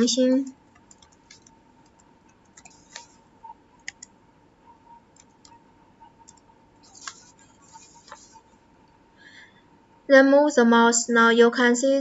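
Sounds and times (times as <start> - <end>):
faint high hum: 0.0 - 12.0
keyboard and mouse clicks: 0.7 - 3.2, 3.8 - 4.2, 5.1 - 5.6, 6.2 - 8.4.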